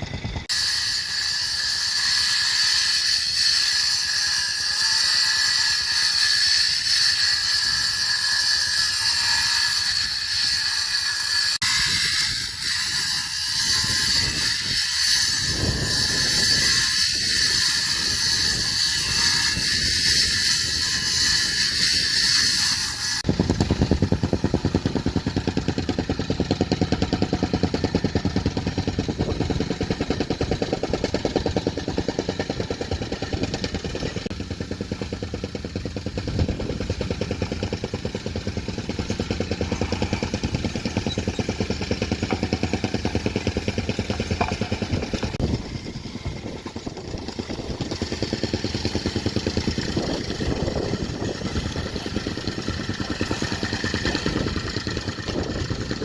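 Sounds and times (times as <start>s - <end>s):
heavy machinery engine running: 23.2s - 56.0s.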